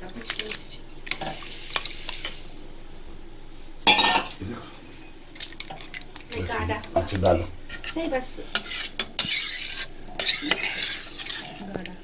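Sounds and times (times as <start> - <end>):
metal spoon stirring in a pot: 3.9 - 12.0
spoon clinking and scraping pot: 7.7 - 11.6.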